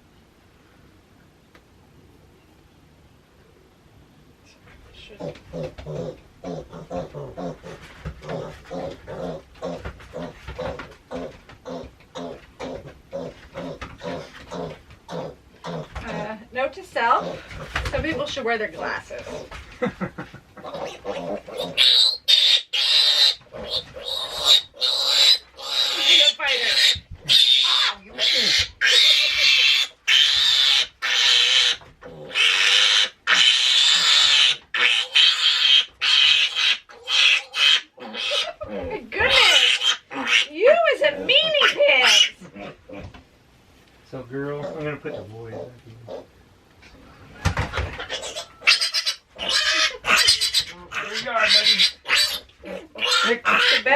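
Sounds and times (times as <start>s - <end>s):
pig grunting: 5.0s - 16.4s, 20.6s - 43.2s, 44.6s - 46.3s, 48.0s - 53.9s
piglet squealing: 20.6s - 42.8s, 47.9s - 53.9s.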